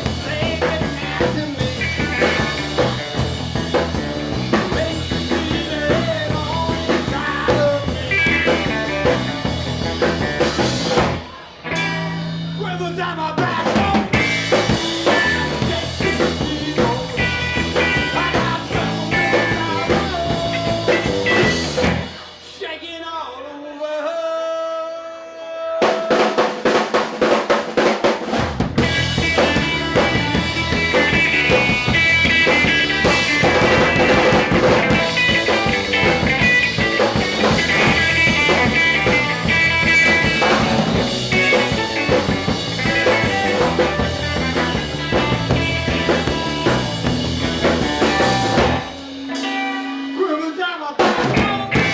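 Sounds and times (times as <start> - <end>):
rock band playing: 0.0 - 22.8, 25.9 - 51.9
rapid drum fill: 13.4 - 22.6, 25.8 - 49.6, 51.0 - 51.9.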